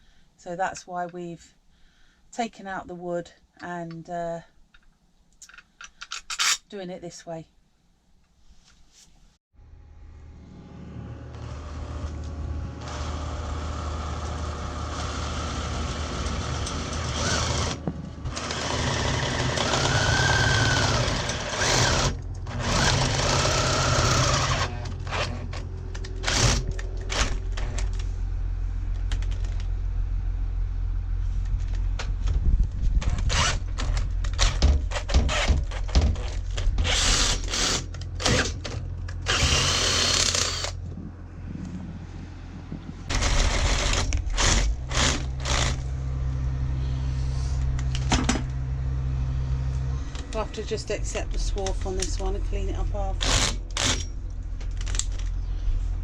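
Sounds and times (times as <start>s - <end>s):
power tool cutting steel: 10.4s - 27.3s, 39.2s - 40.8s
sharp clicks and knocks: 31.4s - 39.6s.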